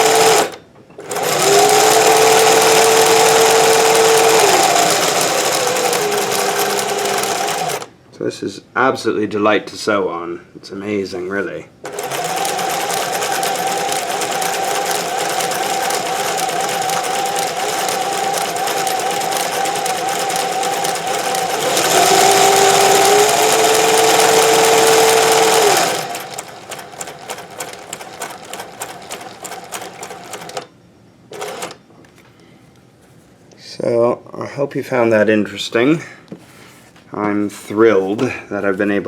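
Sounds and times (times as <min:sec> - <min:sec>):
sewing machine ticking stitches: 0:00.0 - 0:07.9, 0:11.9 - 0:30.7, 0:31.3 - 0:31.8
sewing machine whining: 0:00.0 - 0:07.9, 0:11.8 - 0:30.7, 0:31.3 - 0:31.8.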